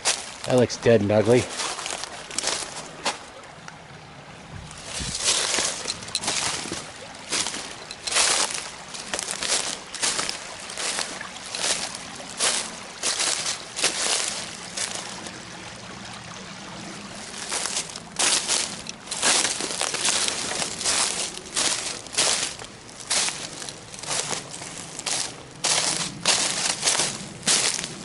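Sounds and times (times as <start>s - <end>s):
footsteps crunching through leaves: 0.0s - 3.2s, 4.7s - 15.3s, 17.2s - 28.0s
stream trickling: 0.0s - 28.0s.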